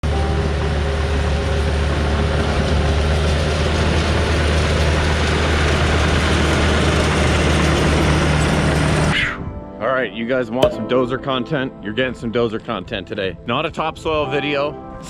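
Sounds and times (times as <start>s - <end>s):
diesel engine droning: 0.0s - 9.2s.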